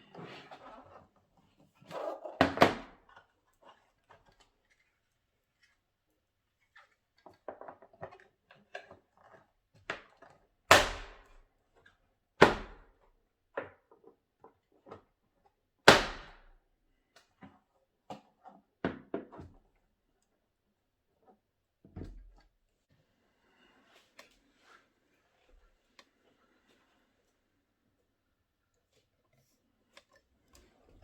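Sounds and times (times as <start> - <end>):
loud plastic thuds: 15.9 - 16.5.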